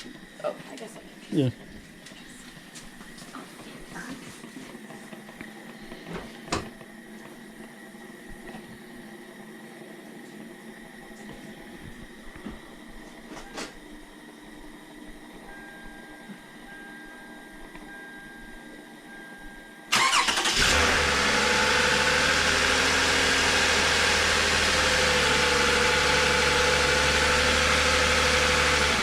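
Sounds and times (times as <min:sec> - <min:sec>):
car engine starting and idling: 0:19.9 - 0:29.0.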